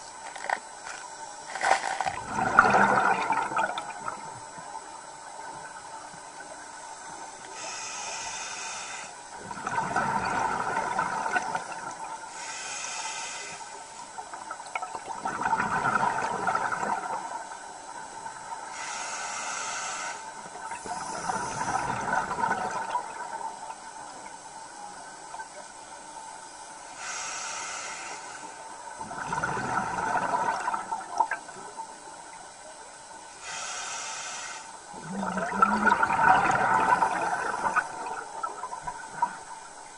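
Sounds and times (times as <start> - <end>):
exhaled bubbles rushing: 1.6 - 4.4, 9.4 - 12.1, 14.7 - 17.4, 20.5 - 23.4, 29.0 - 31.5, 34.9 - 39.6
regulator inhalation hiss: 7.0 - 9.4, 12.3 - 14.0, 18.6 - 22.0, 26.7 - 28.8, 33.3 - 34.9.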